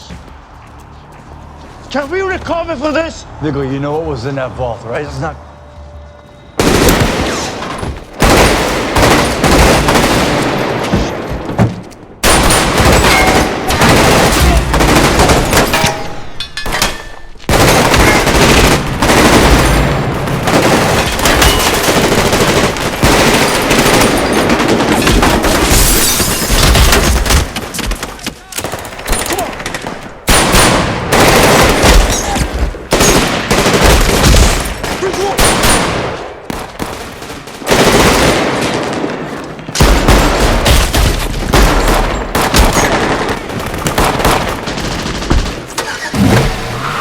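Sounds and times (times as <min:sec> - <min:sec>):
rapid gunfire: 0:08.2 - 0:10.6, 0:12.2 - 0:15.7, 0:17.5 - 0:25.7, 0:28.6 - 0:32.2, 0:32.9 - 0:39.0.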